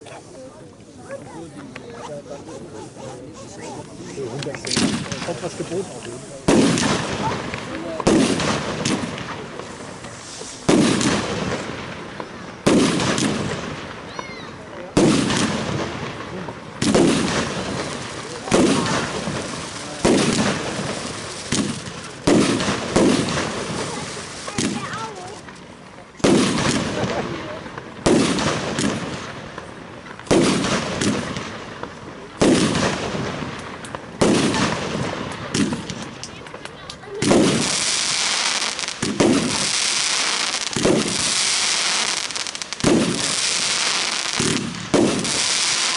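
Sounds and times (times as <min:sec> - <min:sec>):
firework shots bursting with bangs: 0:01.1 - 0:45.9.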